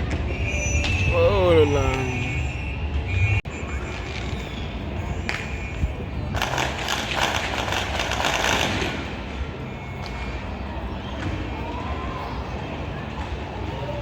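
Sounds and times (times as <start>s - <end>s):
fireworks crackling: 6.3s - 9.1s.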